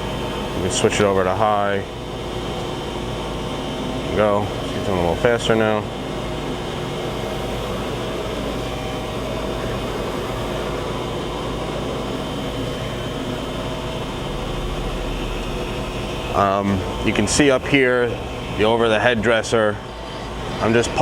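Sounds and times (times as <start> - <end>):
surface grinder running: 6.6 - 20.6.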